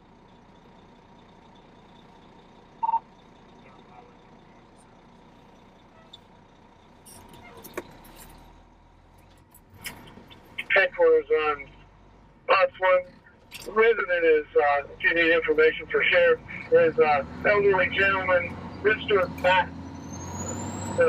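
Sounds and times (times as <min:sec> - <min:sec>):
fire engine running: 0:00.0 - 0:21.0
short beep: 0:02.8 - 0:03.0.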